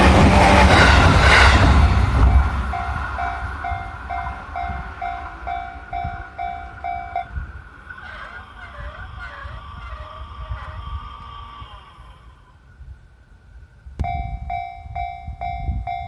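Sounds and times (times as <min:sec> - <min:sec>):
level-crossing alarm ringing: 0:00.0 - 0:09.2, 0:14.0 - 0:16.0
train rumble: 0:00.0 - 0:16.0.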